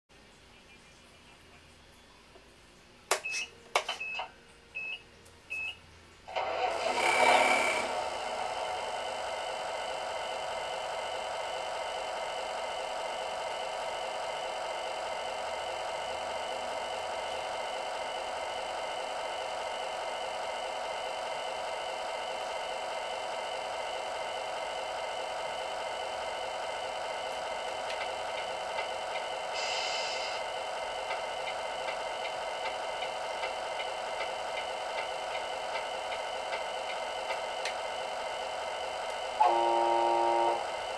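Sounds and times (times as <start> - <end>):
simulated diesel engine idle: 6.3 - 40.9
brief bright hiss: 29.6 - 30.4.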